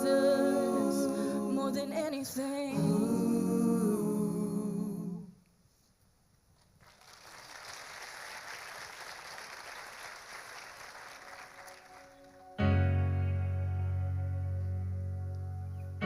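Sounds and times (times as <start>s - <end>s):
congregation applauding: 6.8s - 12.6s.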